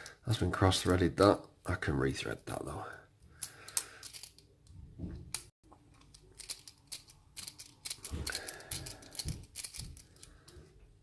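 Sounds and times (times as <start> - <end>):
small metallic clicks and scrapes: 3.4 - 4.5, 5.3 - 10.7.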